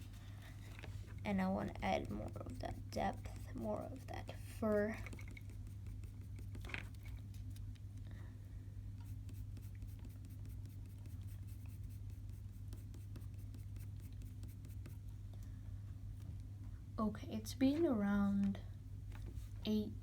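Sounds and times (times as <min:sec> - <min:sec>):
pencil scratching on paper: 0:00.0 - 0:00.4, 0:01.3 - 0:07.6, 0:09.0 - 0:15.0
low background hum: 0:00.0 - 0:20.0.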